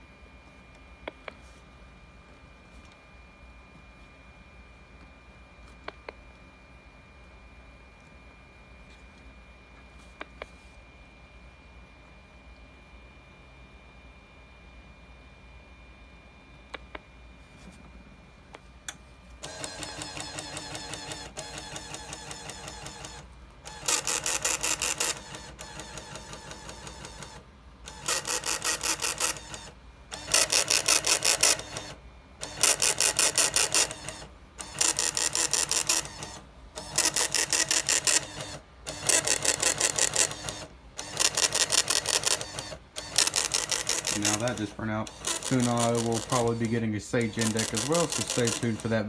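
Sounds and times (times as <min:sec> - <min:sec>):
dot-matrix printer chatter: 0:19.4 - 0:49.0.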